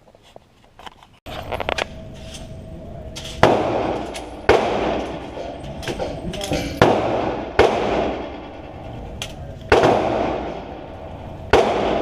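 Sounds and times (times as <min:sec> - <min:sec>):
pistol shots: 0:03.3 - 0:12.0.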